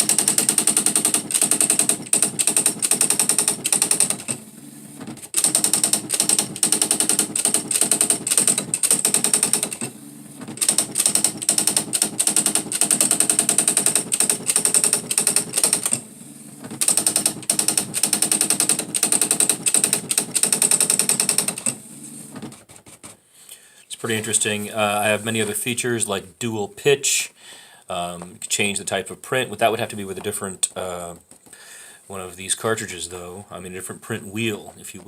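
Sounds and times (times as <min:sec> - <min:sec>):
electronic typewriter printing: 0:00.0 - 0:04.4, 0:05.0 - 0:23.2.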